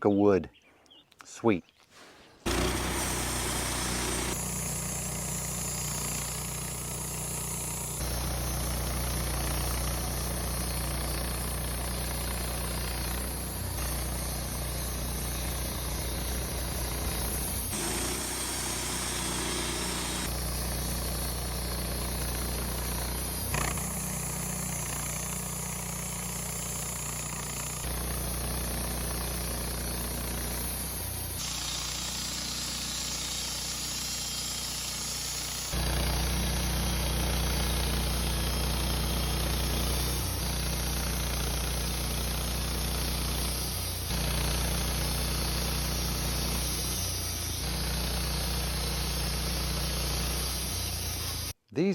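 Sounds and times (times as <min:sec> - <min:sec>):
sawmill engine droning: 0:02.5 - 0:51.5.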